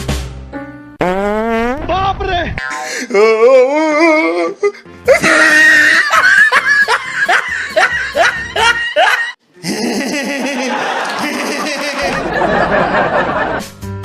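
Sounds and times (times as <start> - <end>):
person laughing loudly: 5.1 - 13.6.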